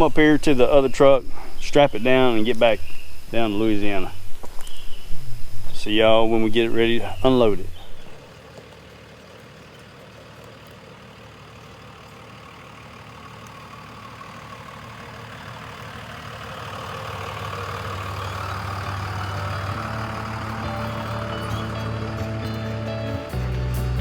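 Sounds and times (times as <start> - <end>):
road noise: 0.0 - 24.0
truck engine running: 6.8 - 24.0.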